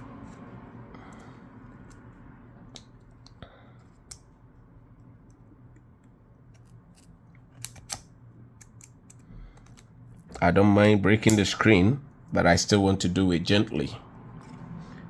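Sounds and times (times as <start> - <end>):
faint steady hum: 0.0 - 15.0
metal pry tool clicking: 6.5 - 8.0, 8.6 - 9.8.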